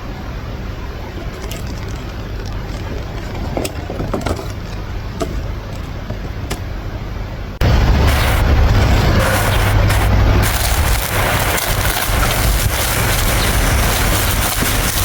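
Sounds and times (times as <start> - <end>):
loud steady rumbling: 0.0 - 15.0.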